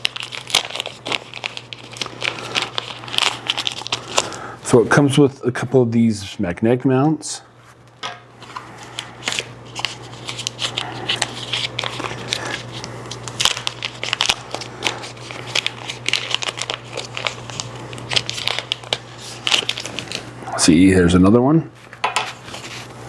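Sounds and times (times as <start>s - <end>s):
packaging crinkling: 0.0s - 4.6s, 8.4s - 20.5s
low steady hum: 0.0s - 23.0s.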